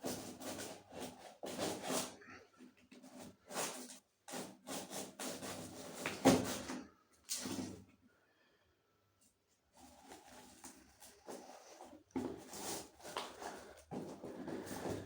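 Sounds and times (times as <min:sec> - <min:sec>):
packaging rubbing and sliding: 0:09.8 - 0:15.0.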